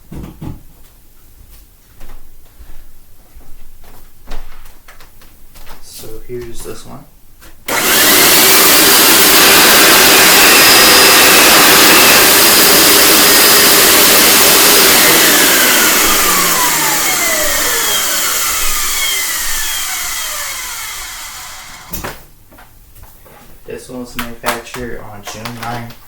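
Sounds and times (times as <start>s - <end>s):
carpet cleaner motor running: 7.7s - 22.0s
motor winding down: 7.7s - 22.0s.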